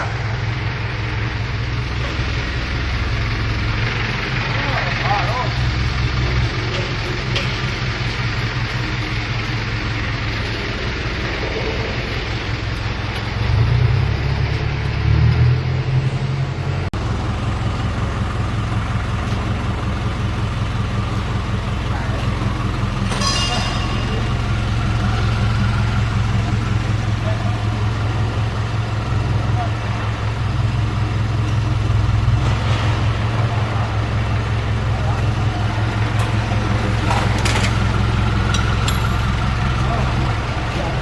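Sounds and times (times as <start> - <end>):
engine idling: 0.0 - 15.0, 16.5 - 41.0.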